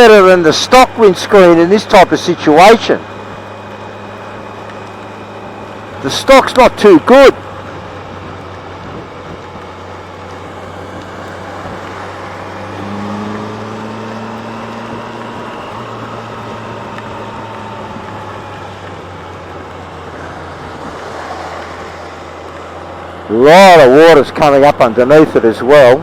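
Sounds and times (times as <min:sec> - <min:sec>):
motorcycle engine low hum: 0:00.0 - 0:26.0
wind and rain rushing: 0:07.3 - 0:23.1.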